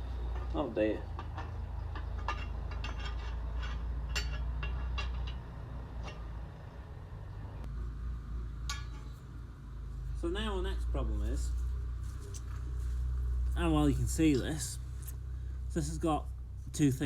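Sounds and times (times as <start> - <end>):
loose metal parts clinking: 0.0 - 6.4
steady low rumble: 0.0 - 17.0.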